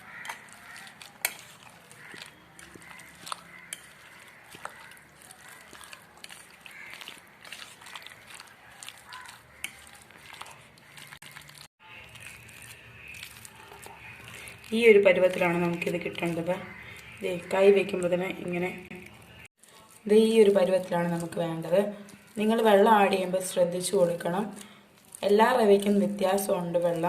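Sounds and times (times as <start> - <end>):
hands squishing dough: 0.0 - 27.0.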